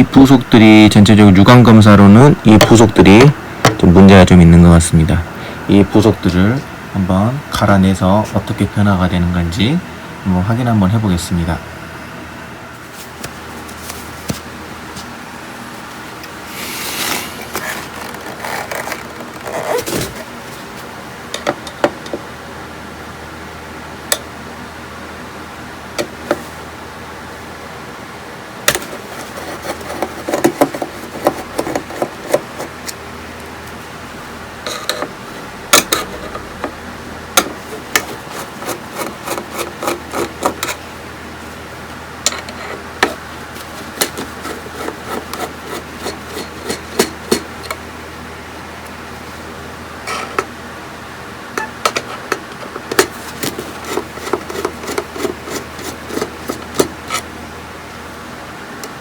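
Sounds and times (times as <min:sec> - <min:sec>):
steady low hum: 0:00.0 - 0:59.0
tool scraping: 0:16.5 - 0:20.3, 0:28.7 - 0:33.0, 0:34.7 - 0:36.7, 0:37.4 - 0:40.9, 0:42.3 - 0:47.8, 0:50.0 - 0:50.5, 0:51.6 - 0:57.3.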